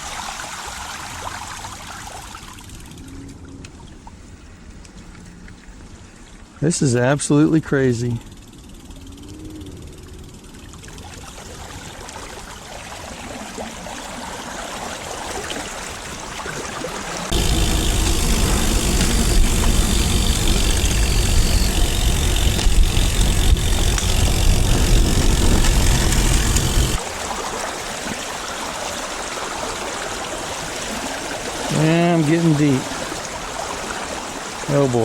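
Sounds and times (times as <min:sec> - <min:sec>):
heavy low rumble: 0:17.3 - 0:27.0.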